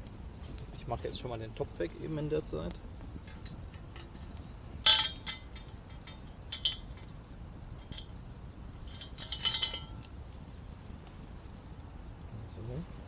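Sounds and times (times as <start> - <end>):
metal pot and chain clinking: 3.3 - 8.2, 8.8 - 10.5.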